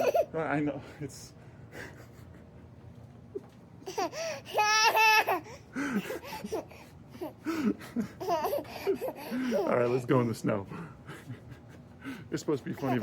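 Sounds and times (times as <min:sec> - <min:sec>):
baby squealing laugh: 0:00.0 - 0:00.3.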